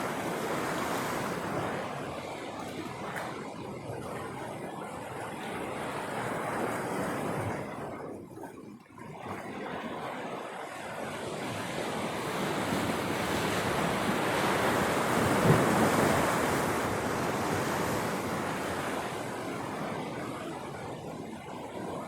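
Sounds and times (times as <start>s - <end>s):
surf washing against rocks: 9.6s - 21.0s.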